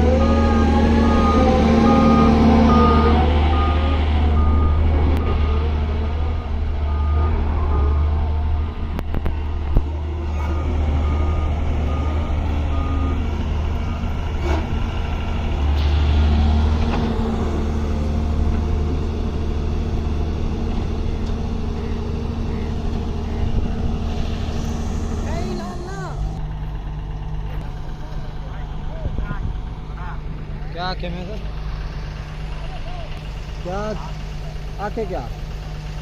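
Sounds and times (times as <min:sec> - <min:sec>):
excavator diesel engine: 0:00.0 - 0:36.0
back-up alarm beeping: 0:00.2 - 0:05.6.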